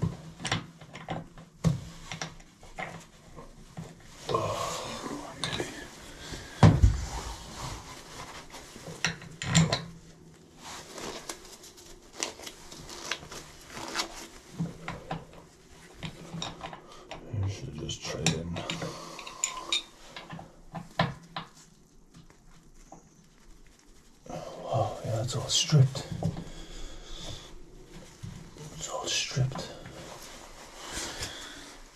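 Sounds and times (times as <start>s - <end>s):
hand tools clinking on metal fittings: 18.2s - 20.3s.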